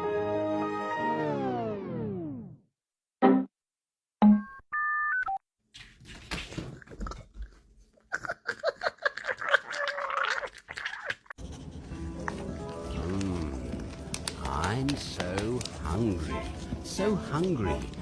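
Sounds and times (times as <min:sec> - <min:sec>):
dog chewing and lapping food: 0:09.4 - 0:18.0.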